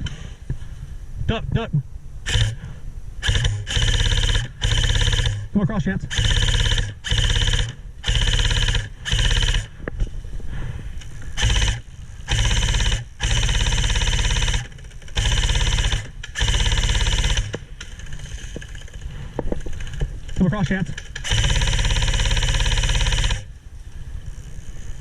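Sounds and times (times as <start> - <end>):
airsoft gun firing full auto: 2.3 - 5.5, 6.1 - 9.7, 11.4 - 19.0, 19.8 - 23.5.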